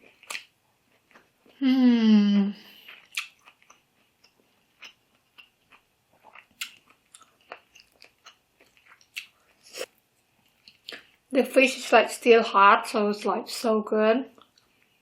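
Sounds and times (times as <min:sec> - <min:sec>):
person chewing food: 0:00.0 - 0:01.7, 0:02.6 - 0:11.3, 0:14.4 - 0:15.0
wet mouth clicks and smacks: 0:03.0 - 0:03.6.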